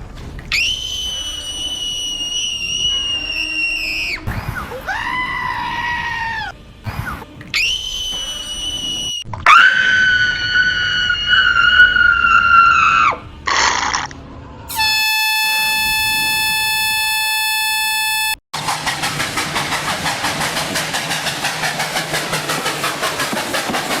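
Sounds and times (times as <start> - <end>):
high-pitched wavering screech: 14.7 - 18.4
steady horn-like tone: 14.7 - 18.4
loud noisy pulsing: 15.2 - 24.0.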